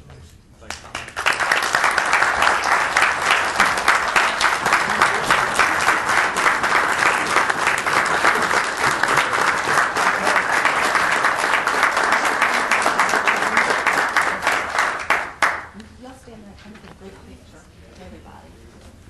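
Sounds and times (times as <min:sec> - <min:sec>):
audience applauding: 0:00.7 - 0:15.8.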